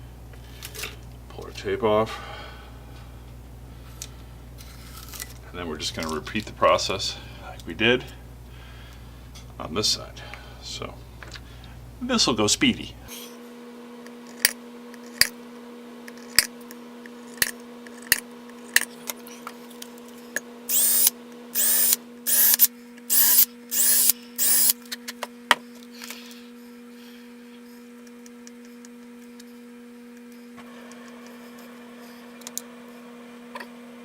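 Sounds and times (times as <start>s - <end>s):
power drill whirring: 20.7s - 24.8s.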